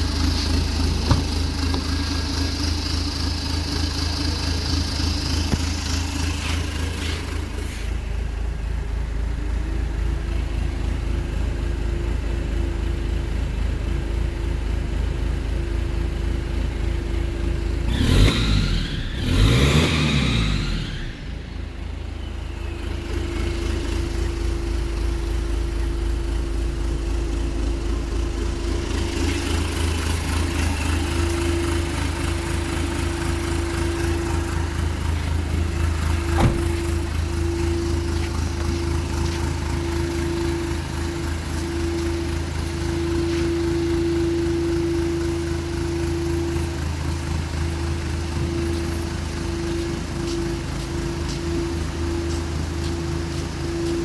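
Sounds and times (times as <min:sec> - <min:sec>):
truck diesel engine idling: 0:00.0 - 0:54.0
engine revving: 0:17.8 - 0:21.5
steady whine: 0:23.1 - 0:54.0.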